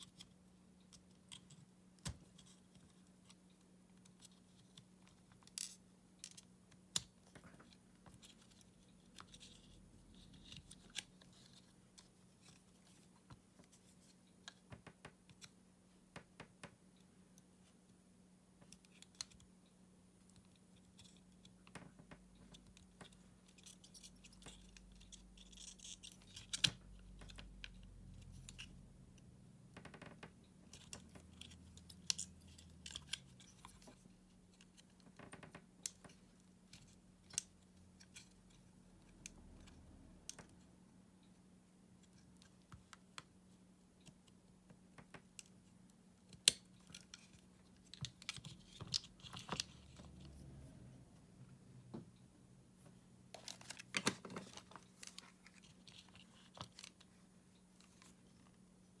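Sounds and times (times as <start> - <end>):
plastic and metal parts clicking: 30.7 - 38.6.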